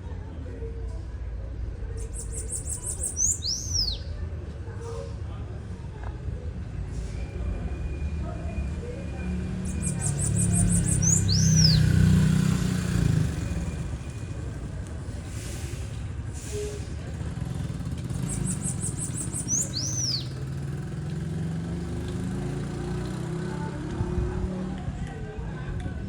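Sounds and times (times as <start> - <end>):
passing motor vehicle rumble: 0.0 - 26.0
bird singing: 2.0 - 4.1, 9.6 - 12.2, 18.1 - 20.6.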